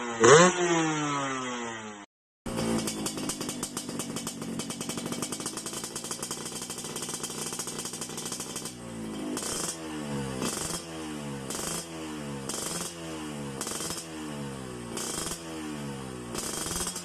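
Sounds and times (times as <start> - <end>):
two-stroke engine idling: 2.5 - 14.0, 14.6 - 17.0.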